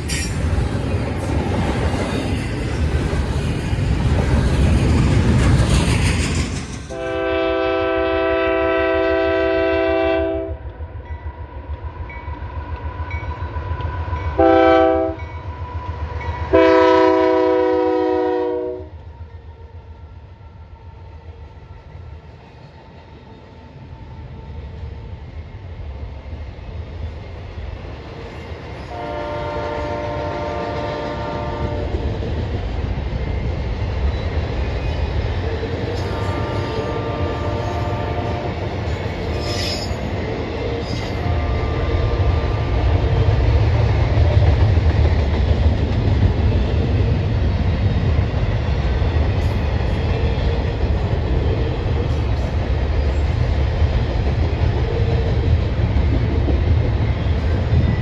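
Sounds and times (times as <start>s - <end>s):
train rumbling and clattering: 0.0s - 58.0s
locomotive air horn blasts: 6.9s - 10.6s, 14.4s - 15.2s, 16.5s - 18.9s, 28.9s - 31.9s, 36.2s - 38.5s.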